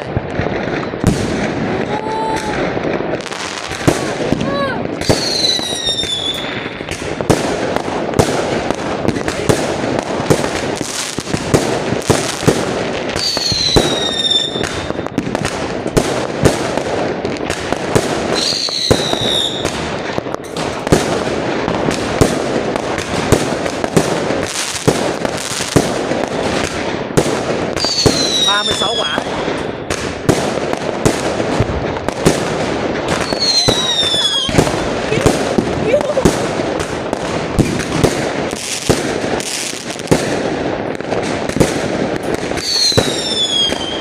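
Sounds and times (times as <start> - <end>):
fireworks crackle and bangs: 0.0 - 44.0
falling firework whistle: 5.0 - 6.7, 13.2 - 15.2, 18.4 - 19.8, 42.6 - 44.0.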